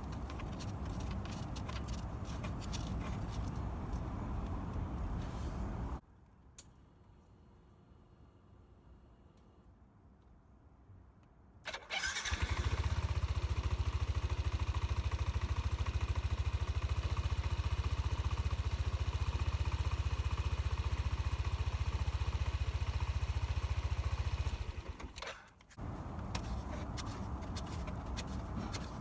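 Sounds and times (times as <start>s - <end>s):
scooter engine starting and idling: 0.0s - 6.0s, 11.7s - 29.0s.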